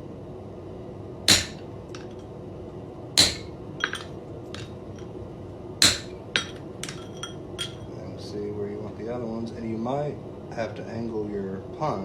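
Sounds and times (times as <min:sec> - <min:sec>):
hammer striking metal punch: 0:01.3 - 0:02.1, 0:03.2 - 0:04.7, 0:05.8 - 0:07.8
light metallic clinks: 0:03.2 - 0:04.7, 0:05.8 - 0:07.9.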